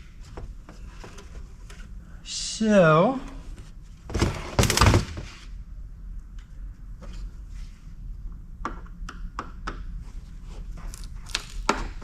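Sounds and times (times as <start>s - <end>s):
low steady hum: 0.0s - 12.0s
faint clicks and knocks of parts: 6.1s - 7.3s.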